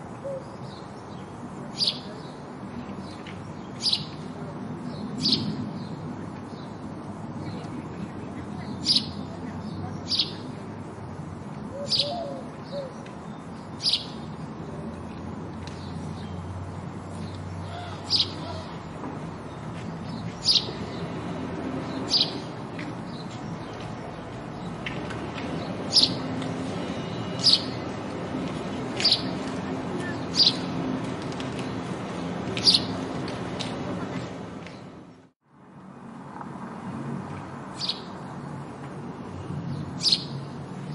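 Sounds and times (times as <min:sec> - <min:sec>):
sparrow chirping: 0:00.2 - 0:02.4, 0:03.0 - 0:04.3, 0:04.9 - 0:10.6, 0:11.7 - 0:14.4, 0:15.6 - 0:18.7, 0:19.3 - 0:21.2, 0:21.8 - 0:23.9, 0:25.6 - 0:28.0, 0:28.8 - 0:30.8, 0:32.6 - 0:33.0, 0:37.7 - 0:38.5, 0:39.7 - 0:40.6.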